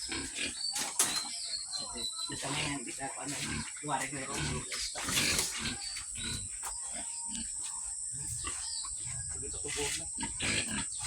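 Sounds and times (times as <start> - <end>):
pigs grunting: 0.0 - 11.0.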